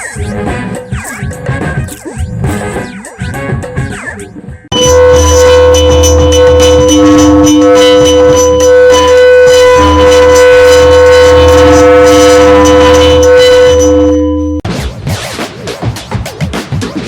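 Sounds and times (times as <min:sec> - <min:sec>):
loud commercial music with beat: 0:00.0 - 0:07.0, 0:14.6 - 0:17.0.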